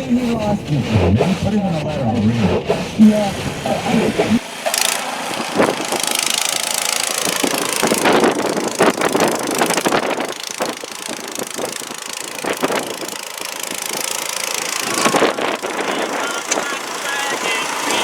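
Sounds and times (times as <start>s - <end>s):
scattered crackles: 6.0s - 18.0s
car driving in snowstorm: 14.9s - 18.0s.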